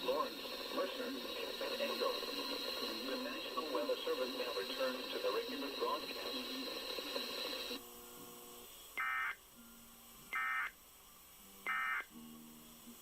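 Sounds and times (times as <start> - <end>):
digital data buzzing bursts: 0.0 - 7.8, 9.0 - 9.4, 10.3 - 10.8, 11.6 - 12.2.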